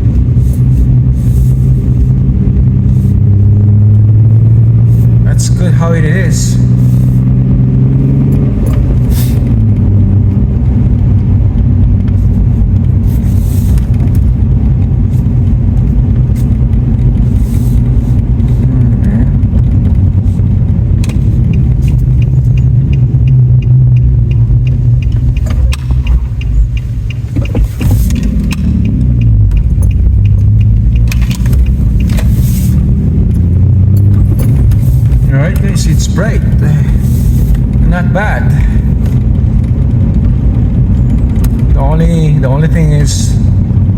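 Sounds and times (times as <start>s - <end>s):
truck engine and road rumble: 0.0s - 43.9s
fast light ticks: 20.8s - 32.3s.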